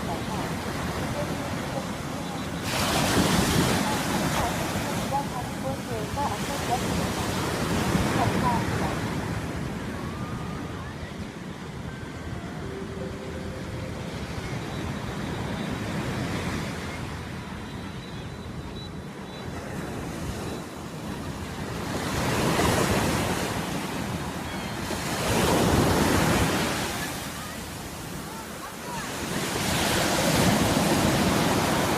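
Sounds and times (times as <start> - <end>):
surf washing on beach: 0.0 - 31.9
waves crashing: 0.0 - 31.9.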